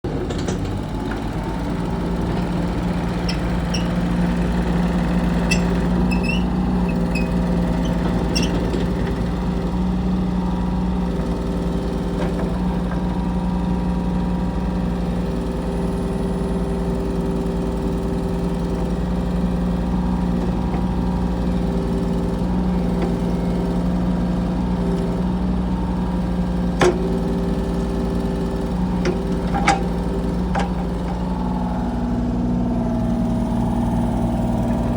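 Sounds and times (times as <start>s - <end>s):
diesel engine running: 0.0s - 34.9s
short squeaks and clicks: 3.2s - 4.2s, 5.3s - 9.0s.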